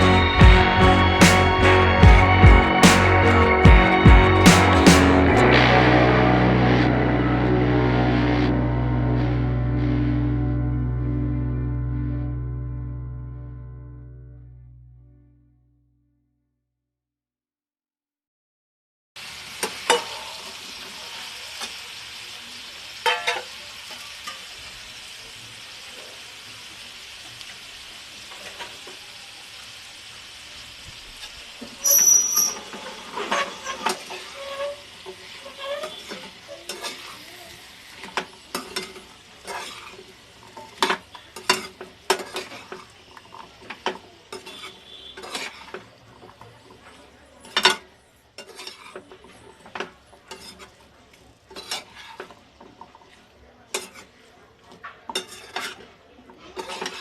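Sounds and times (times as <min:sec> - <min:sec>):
food sizzling in oil: 0:19.2 - 0:46.4.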